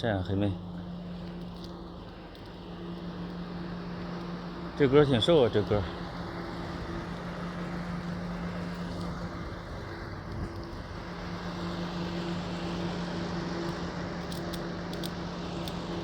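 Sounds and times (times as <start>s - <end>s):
outdoor traffic noise: 0.0s - 16.0s
vehicle engine idling: 0.0s - 16.0s
light clicks: 13.6s - 15.9s.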